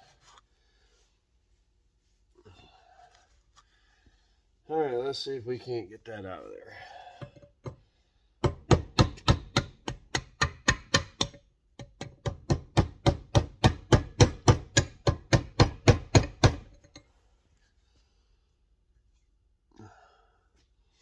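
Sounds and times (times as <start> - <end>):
fast sharp knocks: 8.4 - 16.8.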